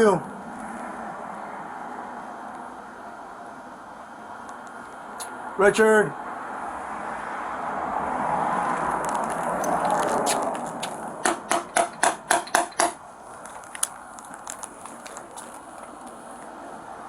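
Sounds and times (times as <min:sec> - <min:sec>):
hard knocking raps: 0:09.7 - 0:13.0.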